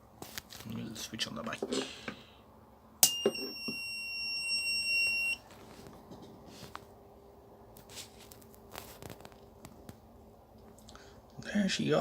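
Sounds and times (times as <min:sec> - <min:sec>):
long high beep: 0:03.0 - 0:05.4.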